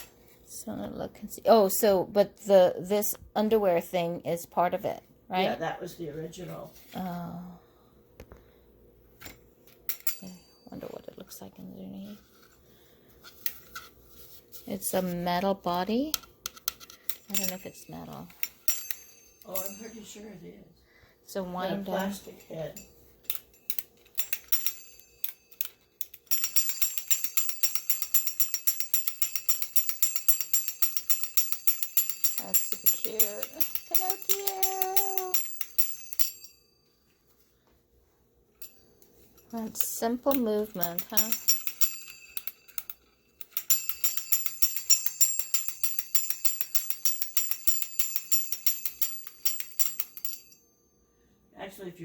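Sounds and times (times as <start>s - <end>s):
clockwork toy clicking clatter: 23.3s - 36.4s, 39.6s - 50.5s.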